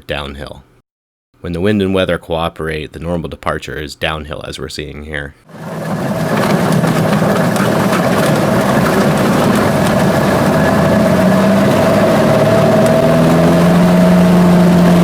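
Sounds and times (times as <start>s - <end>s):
light aircraft engine and propeller: 5.5s - 15.0s.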